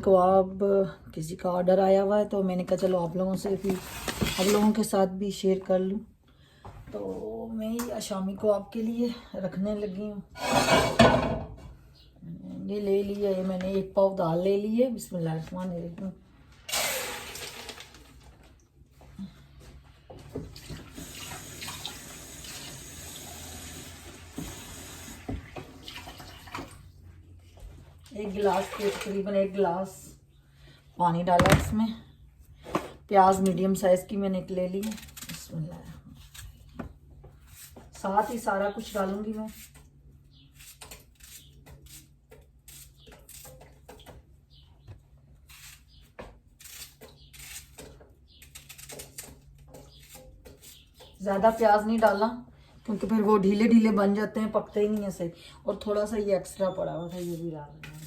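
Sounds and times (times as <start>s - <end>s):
water running into a pot: 16.7s - 18.0s, 20.8s - 26.7s
onion being cut and handled: 33.3s - 44.6s, 45.2s - 52.3s, 56.7s - 58.0s.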